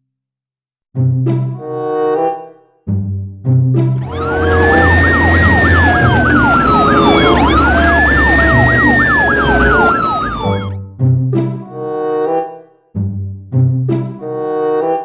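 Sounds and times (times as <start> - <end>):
music: 1.0 - 15.0
siren wailing: 4.0 - 10.8
siren yelp: 4.0 - 10.8.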